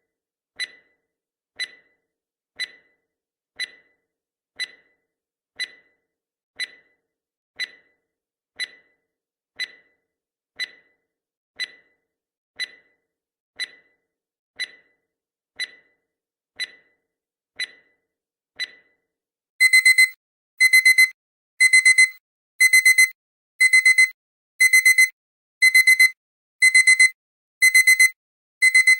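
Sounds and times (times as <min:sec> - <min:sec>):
timer ticking: 0:00.6 - 0:00.9, 0:01.6 - 0:01.9, 0:02.6 - 0:02.9, 0:03.6 - 0:03.9, 0:04.6 - 0:04.9, 0:05.6 - 0:05.9, 0:06.6 - 0:06.9, 0:07.6 - 0:07.9, 0:08.6 - 0:08.9, 0:09.6 - 0:09.9, 0:10.6 - 0:10.9, 0:11.6 - 0:11.9, 0:12.6 - 0:12.9, 0:13.6 - 0:13.9, 0:14.6 - 0:14.9, 0:15.6 - 0:15.9, 0:16.6 - 0:16.9, 0:17.6 - 0:17.9, 0:19.6 - 0:28.9
digital alarm beeps: 0:19.6 - 0:28.9.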